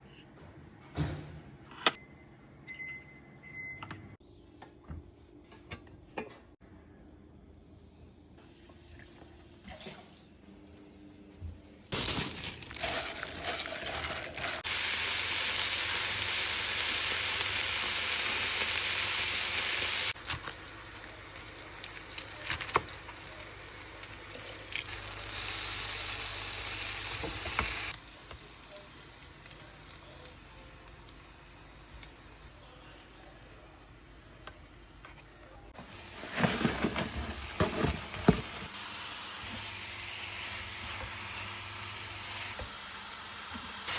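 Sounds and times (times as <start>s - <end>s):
food sizzling in a pan: 12.0s - 34.0s, 35.8s - 43.9s.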